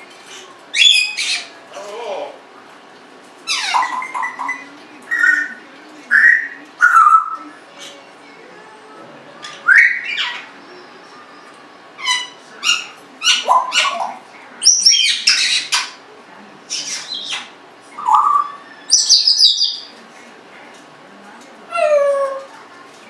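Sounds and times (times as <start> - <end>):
parrot whistles and chirps: 9.6 - 10.4, 16.7 - 19.9.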